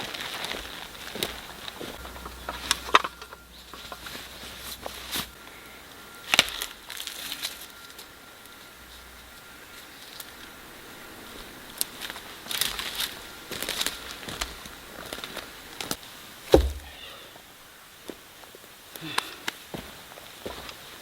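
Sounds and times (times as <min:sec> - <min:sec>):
wood and brush crackling: 0:00.0 - 0:17.2
heavy thump: 0:16.5 - 0:17.1.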